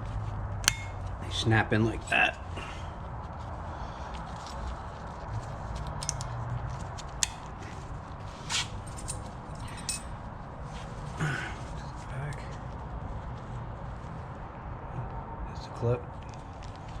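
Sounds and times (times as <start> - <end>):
low steady hum: 0.0 - 17.0
light metal clicks: 0.6 - 1.1, 5.8 - 6.4.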